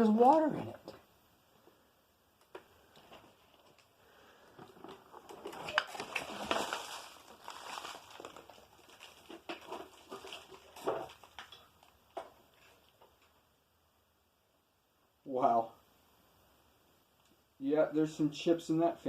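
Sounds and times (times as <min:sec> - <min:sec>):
rustling: 0:00.2 - 0:13.5.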